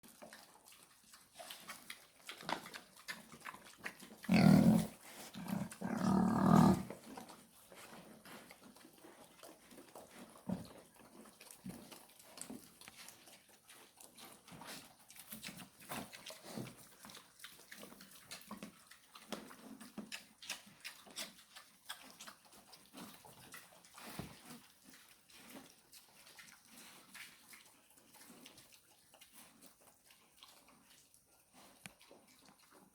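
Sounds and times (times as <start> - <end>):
pigs grunting: 3.4 - 7.2.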